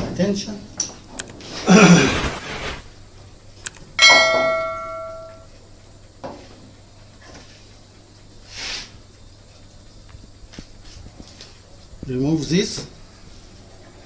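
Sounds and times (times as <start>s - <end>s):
metallic clang ringing: 4.0s - 5.5s.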